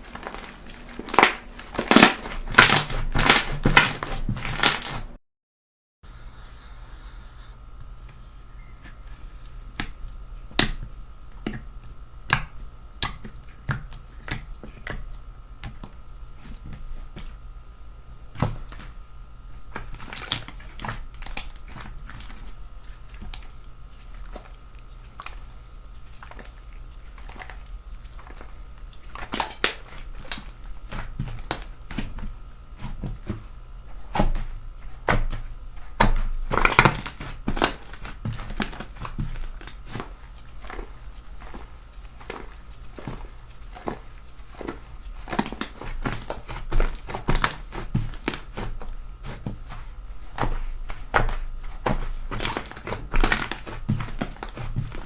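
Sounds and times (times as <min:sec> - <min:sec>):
slime crackling squishes: 0:00.0 - 0:05.1, 0:19.6 - 0:55.0.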